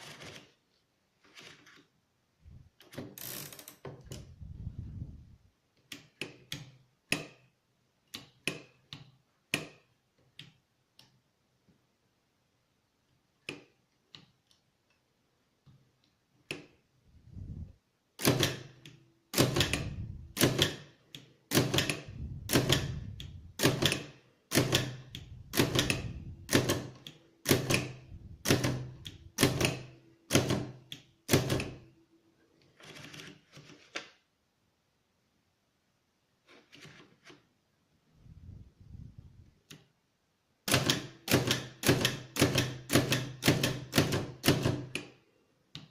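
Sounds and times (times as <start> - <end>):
typewriter mechanism noise: 0.0 - 0.6.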